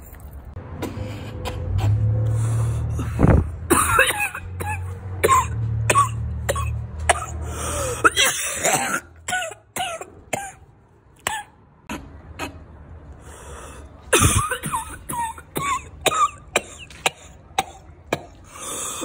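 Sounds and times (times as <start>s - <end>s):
person coughing: 3.0s - 10.6s, 14.1s - 19.0s.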